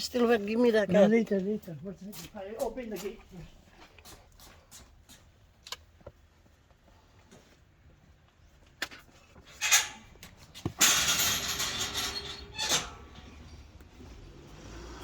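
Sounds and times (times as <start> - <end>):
gate scraping: 9.5 - 13.5
gate rattling: 9.6 - 13.5
gate knocks: 10.8 - 13.3.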